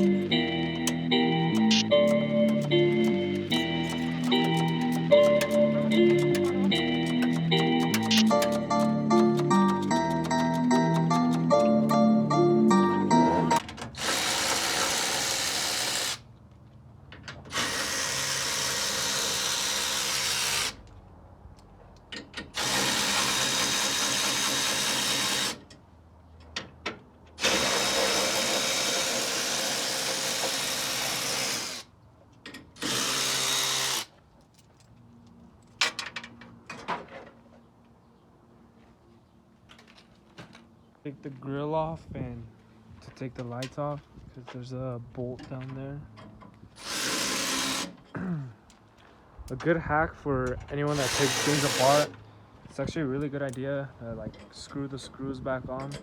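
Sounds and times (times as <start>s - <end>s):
power drill running: 14.0s - 16.2s, 17.5s - 20.8s, 22.6s - 25.6s, 27.4s - 31.8s, 32.8s - 34.1s, 46.8s - 48.0s, 50.9s - 52.1s.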